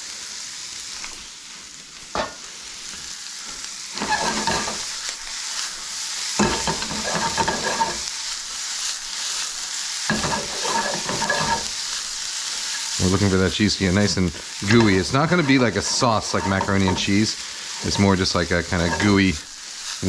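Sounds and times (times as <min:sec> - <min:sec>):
food sizzling in a frying pan: 0:00.0 - 0:20.0
stirring and tossing food: 0:04.0 - 0:04.9, 0:06.4 - 0:08.1, 0:10.1 - 0:11.8, 0:14.0 - 0:20.0.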